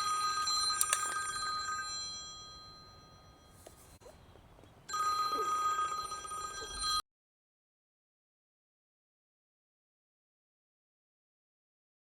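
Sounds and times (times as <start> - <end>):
mobile phone ringtone: 0.0 - 3.6, 4.9 - 7.0.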